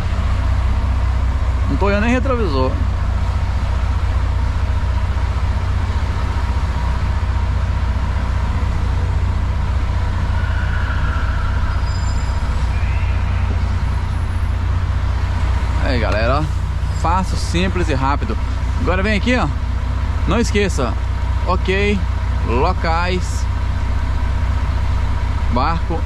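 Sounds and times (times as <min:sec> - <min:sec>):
truck engine drone: 0:00.0 - 0:26.0
faint short higher tones: 0:10.2 - 0:15.1.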